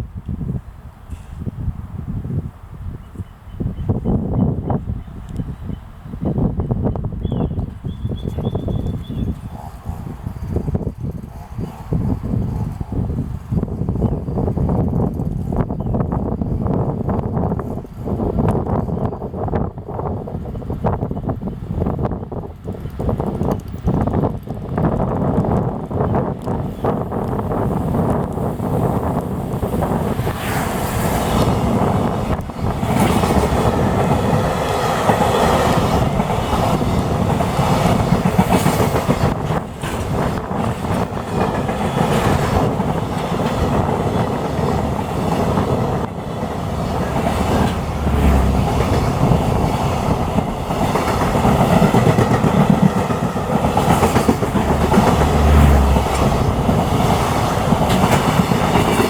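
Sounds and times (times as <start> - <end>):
freight wagons rumbling past: 27.0 - 59.0
wheels clacking over rail joints: 27.2 - 59.0.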